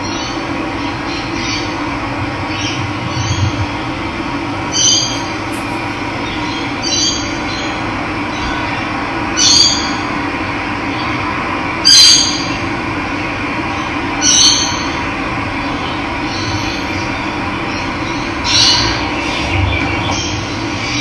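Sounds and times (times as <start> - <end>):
running water: 4.6 - 7.0
bird harsh call: 4.6 - 7.1.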